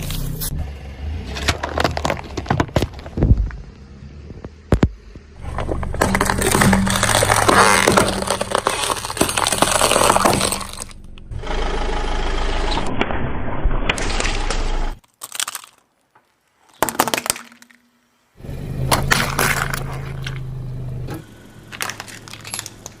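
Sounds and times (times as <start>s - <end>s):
car engine humming: 0.0s - 12.9s, 18.3s - 23.0s
car tyre crushing brittle objects: 1.2s - 3.7s, 4.4s - 11.3s, 13.9s - 18.2s, 18.8s - 23.0s.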